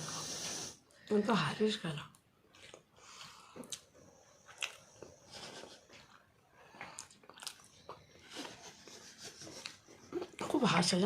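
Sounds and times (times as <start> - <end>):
people chewing: 2.1 - 11.0.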